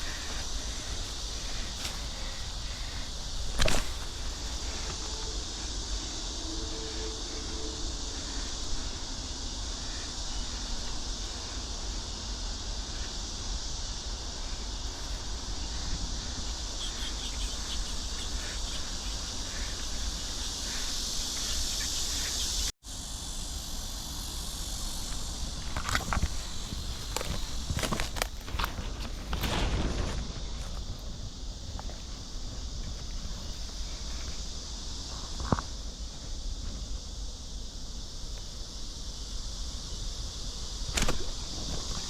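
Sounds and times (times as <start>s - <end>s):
footsteps: 0.0s - 5.3s, 25.7s - 31.1s
insects chirring: 0.0s - 42.0s
rustling: 25.6s - 32.1s.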